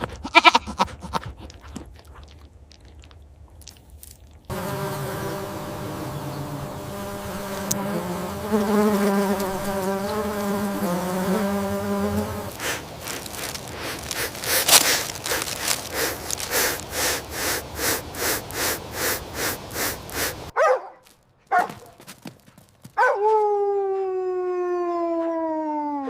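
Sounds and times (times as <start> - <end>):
long animal call: 0.0 - 1.3
animal short cries: 0.2 - 0.8
rhythmic noisy animal pulses: 12.1 - 20.5.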